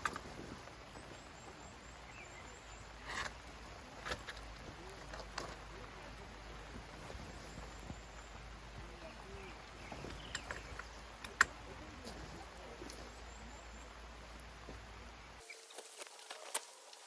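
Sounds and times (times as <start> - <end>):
faint outdoor background noise: 0.0 - 17.0
light clicks: 8.8 - 13.4.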